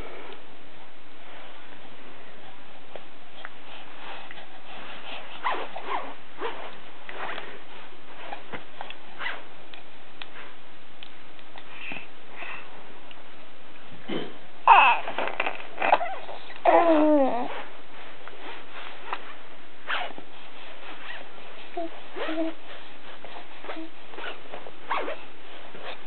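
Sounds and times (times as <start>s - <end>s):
steady background hiss: 0.0s - 26.0s
baby sniffing and snuffling: 19.9s - 26.0s.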